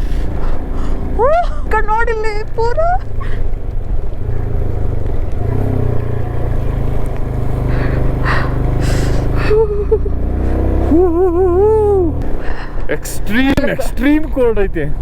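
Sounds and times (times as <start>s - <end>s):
motorcycle engine rumbling: 0.0s - 15.0s
person's wavering ooh: 9.3s - 12.2s.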